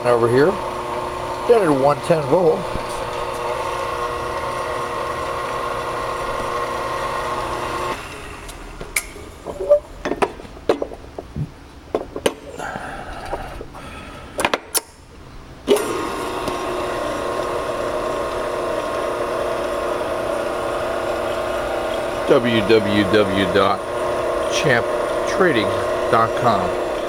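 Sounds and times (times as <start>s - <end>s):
electric motor humming: 0.0s - 8.9s, 15.7s - 27.0s
clicks and knocks: 9.0s - 12.5s.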